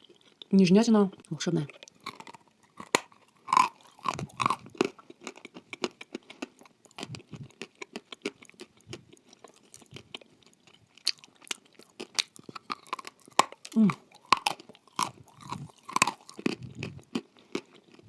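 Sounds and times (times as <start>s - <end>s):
person chewing crunchy food: 0.0s - 0.5s, 1.2s - 18.0s.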